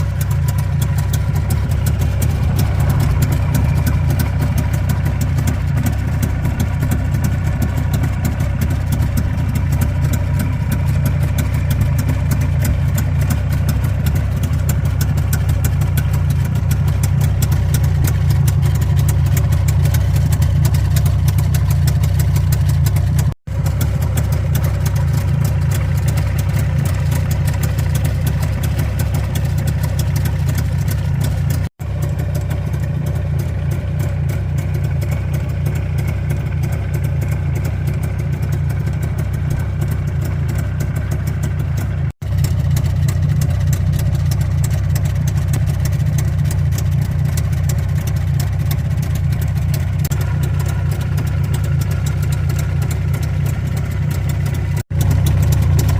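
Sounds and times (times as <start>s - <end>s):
motorcycle engine idling: 0.0s - 55.9s.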